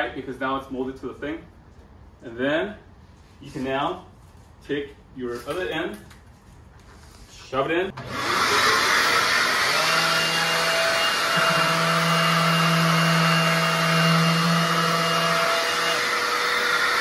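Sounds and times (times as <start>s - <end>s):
shop vac running: 7.9s - 17.0s.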